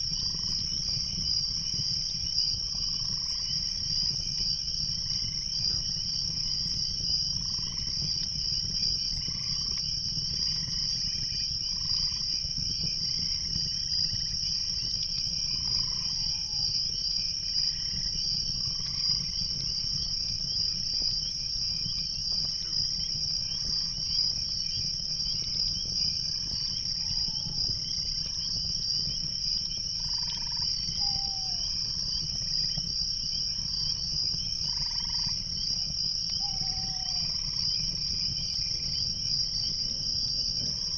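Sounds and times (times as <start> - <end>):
crickets trilling: 0.0 - 40.9
soft pulsing calls: 30.0 - 31.8, 35.8 - 37.6.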